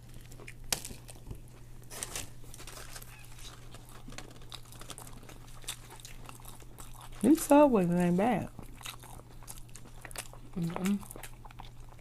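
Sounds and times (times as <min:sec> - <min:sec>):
chewing and mouth smacking: 0:00.0 - 0:01.7, 0:02.8 - 0:12.0
short crunches and crinkles: 0:00.0 - 0:12.0.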